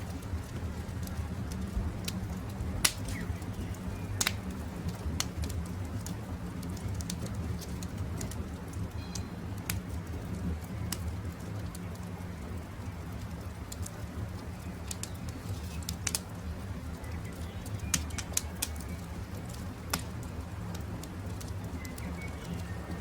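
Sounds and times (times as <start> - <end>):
campfire crackling and popping: 0.0 - 23.0
faint bird chirps: 21.6 - 23.0.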